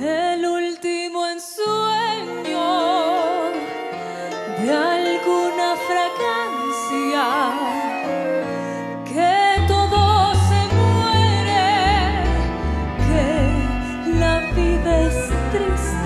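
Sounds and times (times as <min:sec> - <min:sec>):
person singing with vibrato: 0:00.0 - 0:16.0
instrumental accompaniment: 0:01.8 - 0:16.0
deep bass part: 0:09.6 - 0:16.0.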